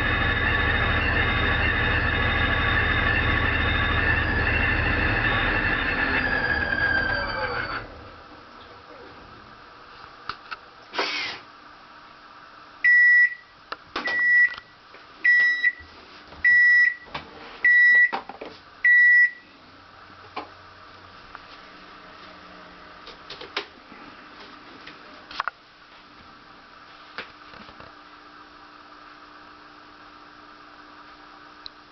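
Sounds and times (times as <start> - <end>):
loud beeps: 0.0 - 8.2, 12.9 - 13.5, 14.1 - 14.6, 15.3 - 15.8, 16.5 - 17.0, 18.9 - 19.4
washing machine spin squealing: 0.0 - 8.4.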